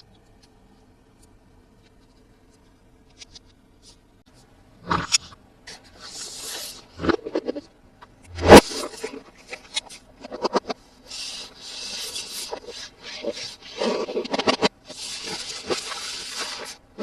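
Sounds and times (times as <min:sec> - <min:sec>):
rubbing and scraping packaging: 0:04.9 - 0:17.0.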